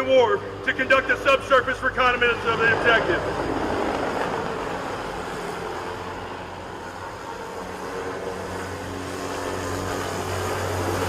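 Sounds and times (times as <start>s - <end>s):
low engine drone: 0.0s - 11.0s.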